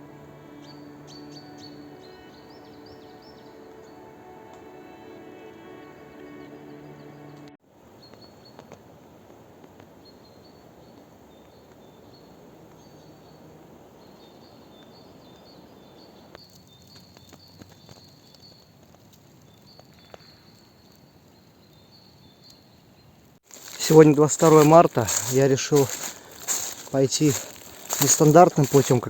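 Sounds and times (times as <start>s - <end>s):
background music: 0.0s - 7.6s
distant small birds singing: 0.0s - 8.9s, 9.8s - 29.0s.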